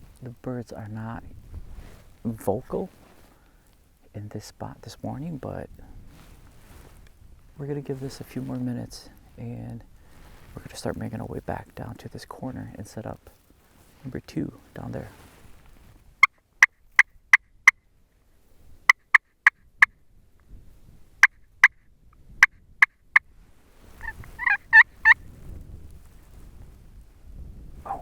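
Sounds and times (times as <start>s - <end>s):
turkey rattling gobble: 18.9s - 19.9s, 24.0s - 25.2s
turkey yelping: 24.0s - 25.2s.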